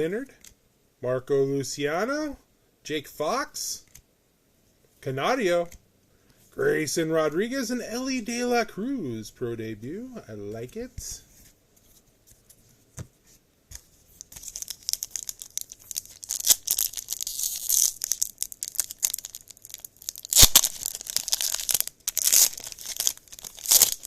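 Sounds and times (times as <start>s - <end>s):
wrapper tearing and crinkling: 14.2s - 24.0s.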